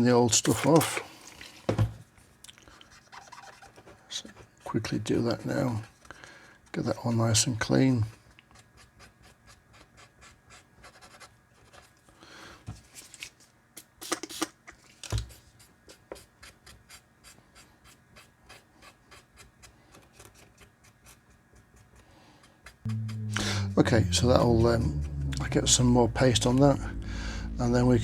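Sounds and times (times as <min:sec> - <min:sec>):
scratchy rubbing and wiping: 0:02.9 - 0:06.0.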